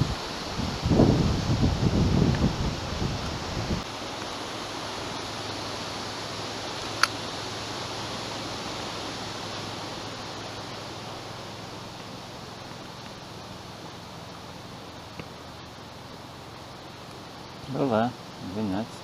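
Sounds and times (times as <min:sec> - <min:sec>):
wind gust on microphone: 0:00.0 - 0:14.2
river water rushing: 0:00.0 - 0:19.0.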